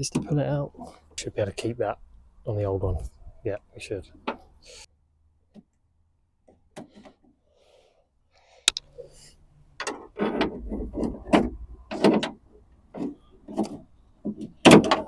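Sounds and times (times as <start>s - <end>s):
wiring loom knocking and rattling: 9.8s - 15.0s.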